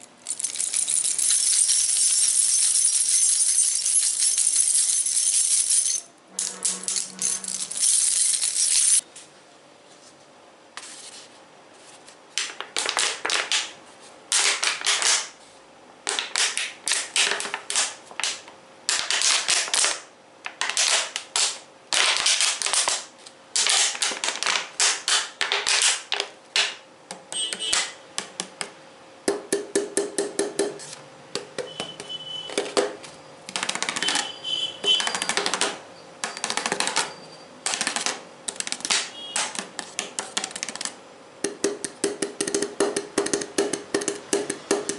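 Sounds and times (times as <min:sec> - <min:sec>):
rapid tapping on hard objects: 0:12.4 - 0:15.3, 0:16.1 - 0:44.9.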